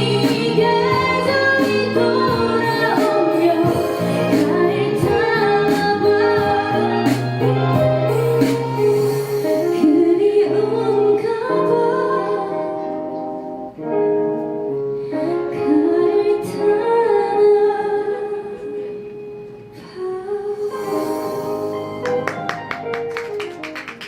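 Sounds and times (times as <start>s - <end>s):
guitar accompaniment: 0.0s - 24.0s
person singing long sliding notes: 20.0s - 22.0s.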